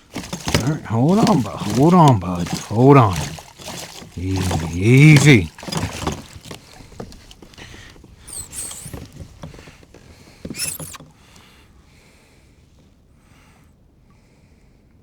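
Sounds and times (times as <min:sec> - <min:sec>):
fish thrashing against kayak: 0:00.0 - 0:11.6.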